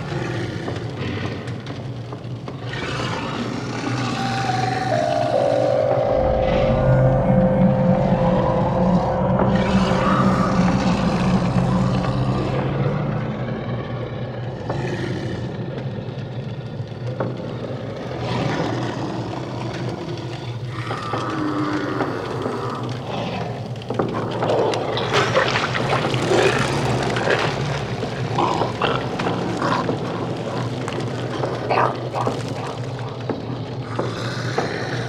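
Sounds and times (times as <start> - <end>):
low mechanical drone: 0.0 - 35.0
scrapes and rumbling noise: 0.0 - 35.0
held tone: 4.3 - 12.4.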